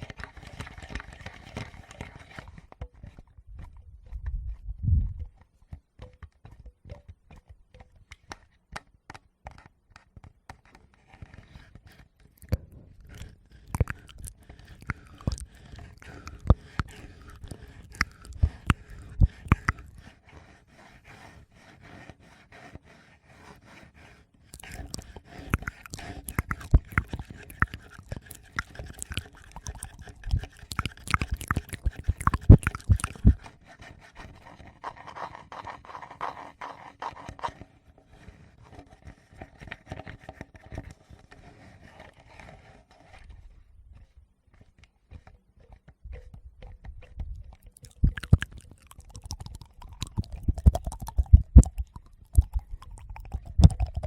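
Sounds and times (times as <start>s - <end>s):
microphone handling taps and scrapes: 2.4s - 7.4s
wet mouth clicks: 12.4s - 20.1s, 24.5s - 33.6s, 45.1s - 54.0s.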